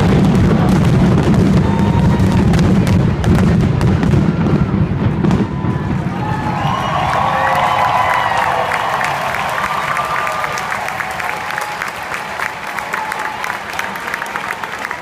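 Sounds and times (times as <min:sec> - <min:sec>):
fireworks booming: 0:00.0 - 0:08.0
fireworks crackling: 0:00.0 - 0:15.0.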